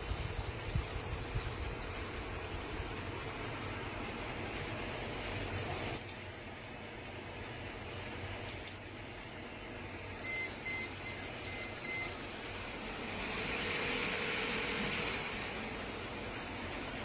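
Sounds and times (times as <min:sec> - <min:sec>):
steady hiss: 0:00.0 - 0:09.9.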